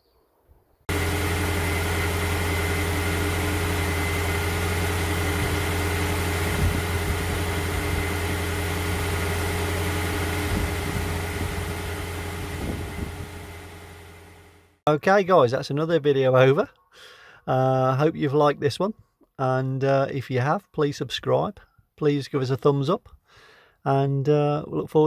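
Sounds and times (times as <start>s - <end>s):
car engine idling: 0.9s - 14.8s.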